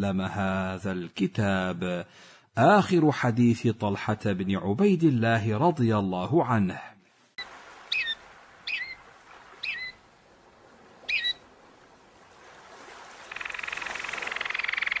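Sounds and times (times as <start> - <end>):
bird chirping: 7.9 - 9.0, 9.6 - 10.0, 11.1 - 11.4, 13.3 - 15.0
frogs trilling: 9.6 - 10.0, 11.1 - 11.4, 13.3 - 15.0.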